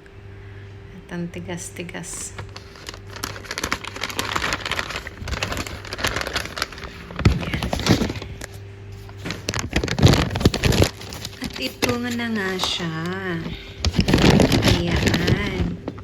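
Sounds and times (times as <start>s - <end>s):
packaging rustling and crinkling: 2.3s - 16.0s
packaging cracks and knocks: 2.5s - 8.5s, 9.2s - 12.9s, 13.8s - 16.0s.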